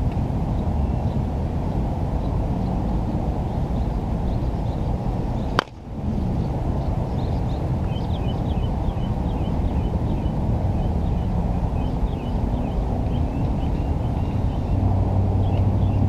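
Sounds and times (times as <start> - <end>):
wind noise on microphone: 0.0 - 16.0
sharp crack: 5.5 - 5.9.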